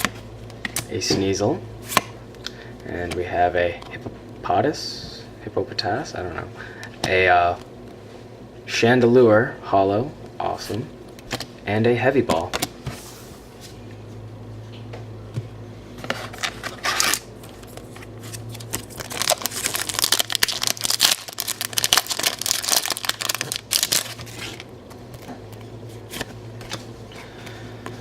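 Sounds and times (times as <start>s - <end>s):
cards rustling: 16.0s - 27.6s
foil pack tearing and crinkling: 16.3s - 24.7s.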